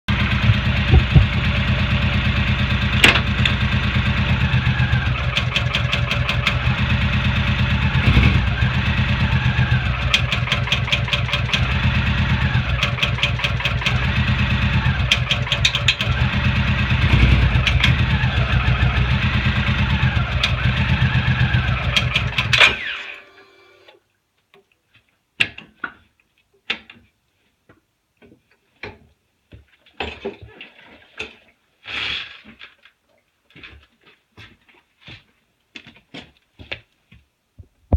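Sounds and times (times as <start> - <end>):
motorcycle engine at low revs: 0.0 - 23.9
sharp knocks: 0.5 - 1.8, 3.0 - 3.6
transmission clicking: 5.3 - 6.7, 10.1 - 11.9, 12.7 - 14.1, 15.1 - 16.2.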